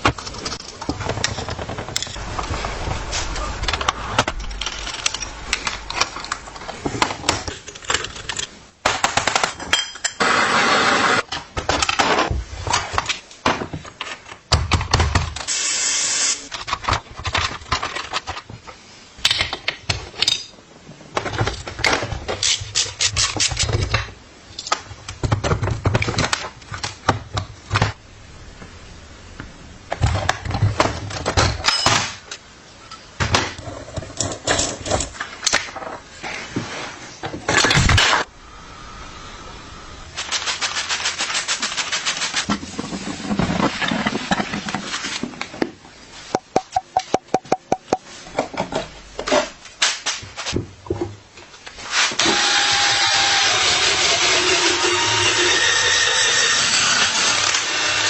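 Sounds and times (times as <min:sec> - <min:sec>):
scraping or hissing noise: 0:00.0 - 0:08.7, 0:36.0 - 0:46.4.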